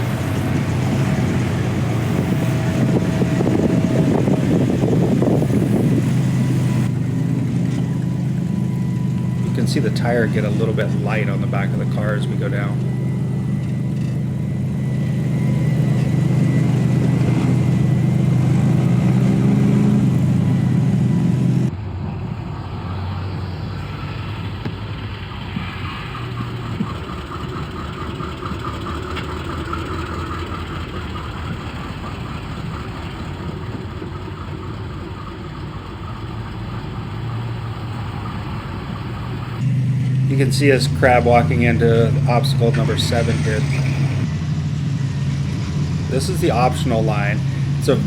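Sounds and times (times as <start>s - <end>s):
engine running at low revs: 0.0s - 48.0s.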